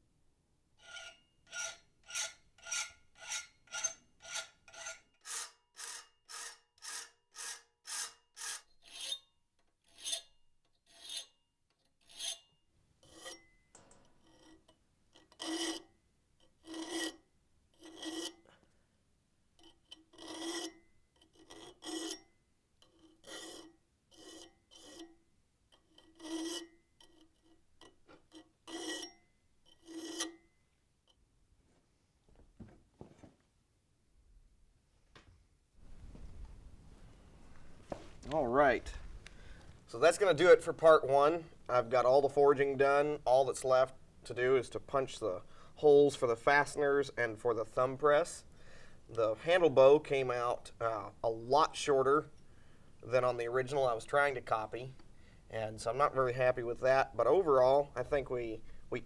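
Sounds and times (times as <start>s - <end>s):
hand file rasping on iron: 0.8s - 11.4s, 12.0s - 13.6s, 14.2s - 17.2s, 17.8s - 18.4s, 19.6s - 22.2s, 22.8s - 25.1s, 25.8s - 27.6s.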